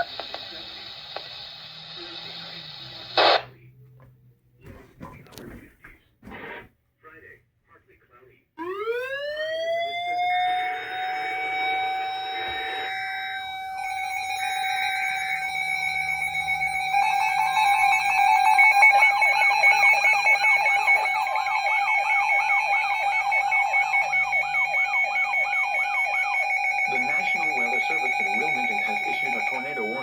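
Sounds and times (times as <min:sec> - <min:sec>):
rapidly warbling siren tone: 0:08.6 - 0:30.0
warning siren steady tone: 0:08.6 - 0:30.0.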